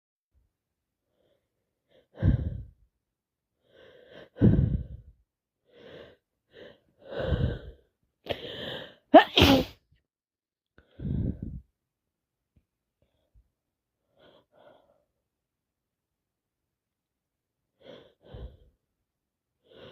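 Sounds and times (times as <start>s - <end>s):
quick breaths: 3.6s - 5.1s, 10.8s - 11.6s
person sneezing: 9.2s - 9.8s.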